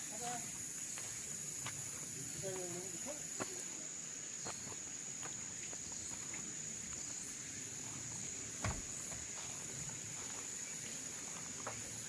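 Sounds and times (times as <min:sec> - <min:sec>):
insects droning: 0:00.0 - 0:12.0
soft thump: 0:08.6 - 0:08.9.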